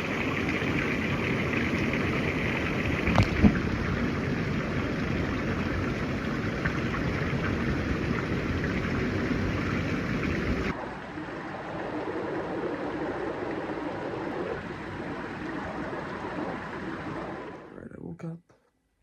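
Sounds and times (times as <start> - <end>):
hot tub jets bubbling: 0.0 - 17.7.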